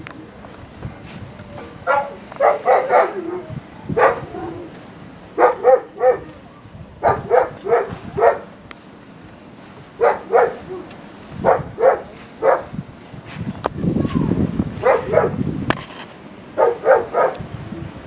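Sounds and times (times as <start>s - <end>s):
dog barking: 1.8s - 4.7s, 5.4s - 6.3s, 7.0s - 8.5s, 10.0s - 12.7s, 14.8s - 15.4s, 16.6s - 17.4s.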